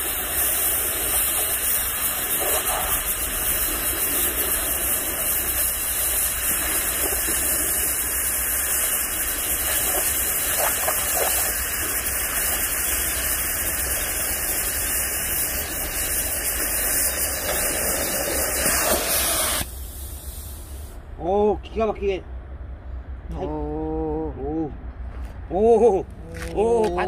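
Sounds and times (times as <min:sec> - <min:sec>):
cutting torch hissing: 0:00.0 - 0:21.1
steady low hum: 0:00.0 - 0:27.0.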